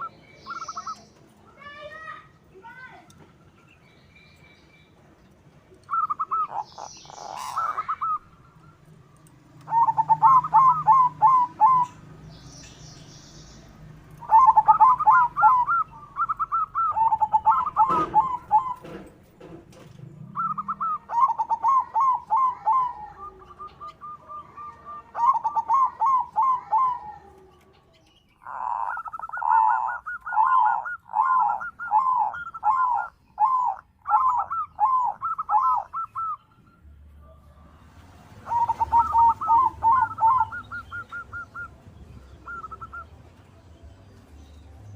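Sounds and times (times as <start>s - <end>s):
dove cooing: 0.0s - 1.0s, 5.8s - 8.5s, 9.6s - 12.1s, 14.2s - 36.4s, 37.2s - 43.2s
small birds chirping: 0.0s - 44.9s.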